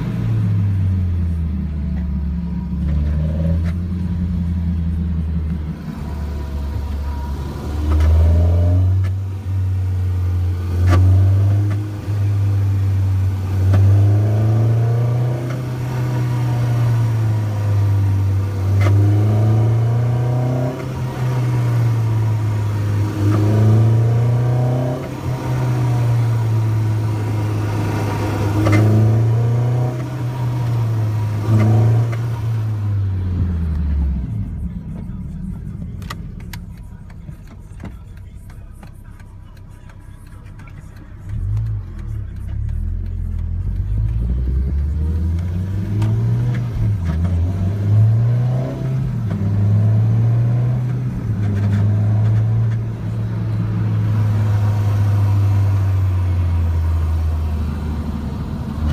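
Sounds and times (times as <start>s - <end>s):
car engine revving: 0.0s - 58.9s
sharp clicks: 34.9s - 47.4s.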